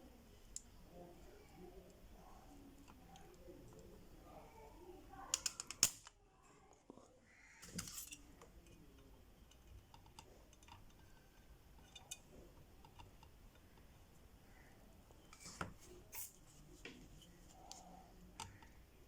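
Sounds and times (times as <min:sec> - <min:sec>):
desoldering pump plunger clicks: 0:05.3 - 0:06.1
desoldering pump snap and hiss: 0:05.3 - 0:06.1.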